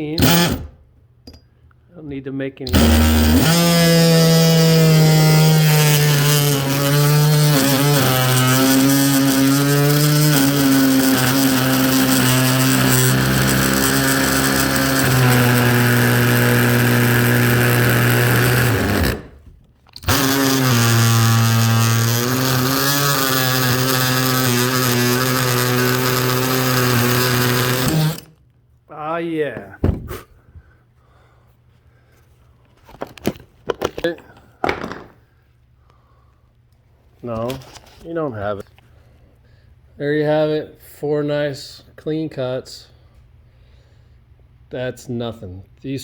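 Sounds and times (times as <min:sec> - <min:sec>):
oscillating multi-tool cutting metal: 0:00.2 - 0:00.7, 0:02.7 - 0:19.4, 0:20.0 - 0:28.3.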